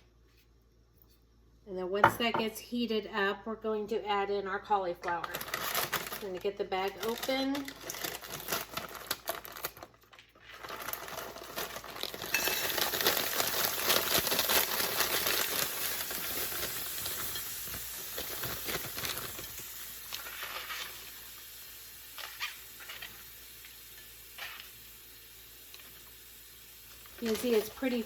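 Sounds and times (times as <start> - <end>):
plastic bag crackling: 5.2 - 21.2, 26.8 - 28.0
vegetables sizzling in oil: 10.4 - 28.0.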